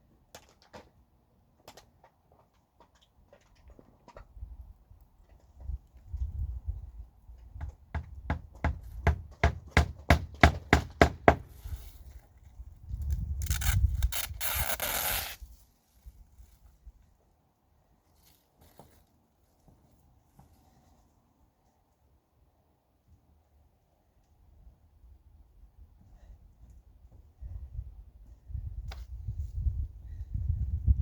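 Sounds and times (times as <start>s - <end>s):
sharp strikes on wood: 8.0s - 11.5s.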